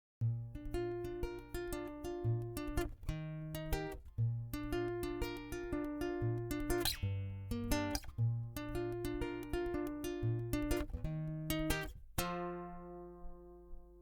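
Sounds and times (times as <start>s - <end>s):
plucked guitar-like music: 0.2s - 14.0s.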